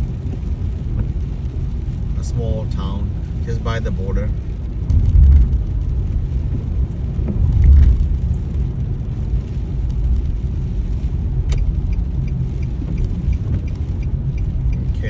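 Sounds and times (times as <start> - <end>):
car road rumble: 0.0 - 15.0
faint regular ticking: 11.5 - 15.0.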